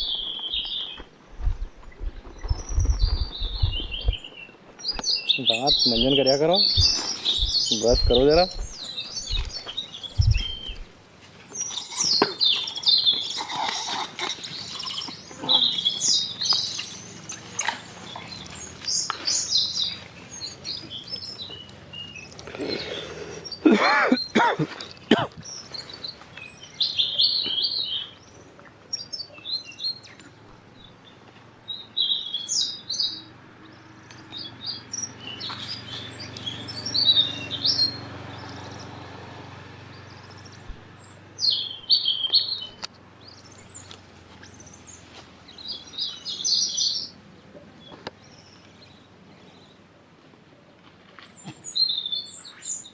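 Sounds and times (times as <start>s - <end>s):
harsh bird calls: 0.0s - 49.8s
birds chirping: 0.0s - 52.9s.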